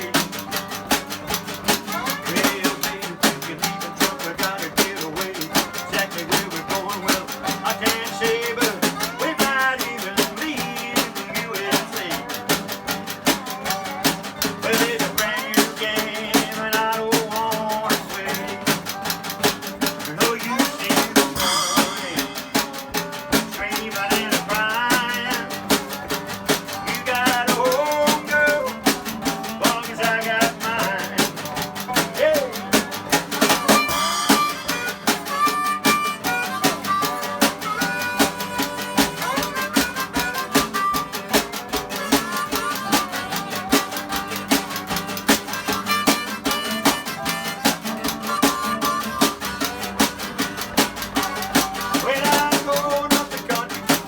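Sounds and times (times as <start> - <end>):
brushed snare drum: 0.0 - 54.0
guitar: 0.0 - 54.0
harmonica: 0.0 - 54.0
strummed ukulele: 0.0 - 54.0.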